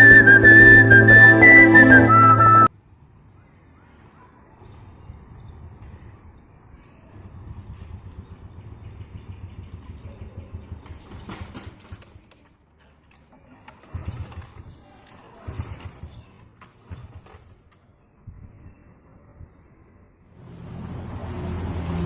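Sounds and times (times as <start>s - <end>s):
motorbike engine running rough: 7.7s - 12.4s.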